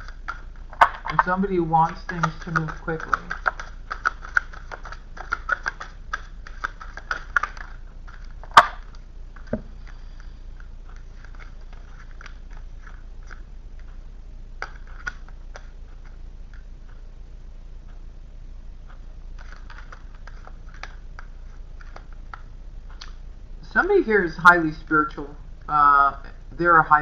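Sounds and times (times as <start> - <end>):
card snapping: 0.0 - 10.2, 19.4 - 23.2
cards being shuffled: 0.0 - 14.0, 14.6 - 16.7, 19.4 - 23.2.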